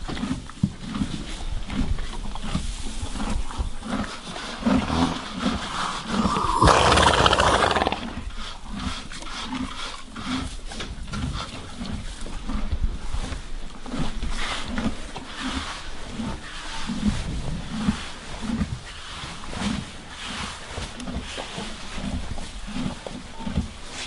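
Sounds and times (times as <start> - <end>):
horses shifting and feeding: 0.0 - 24.0
horse snorting roughly: 5.7 - 8.3.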